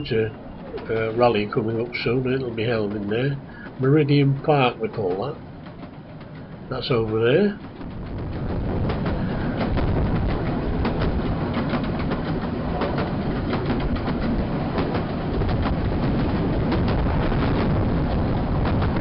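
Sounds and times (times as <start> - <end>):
train wheels rumbling on rails: 0.0 - 19.0
clicks and knocks from rail joints: 4.9 - 19.0.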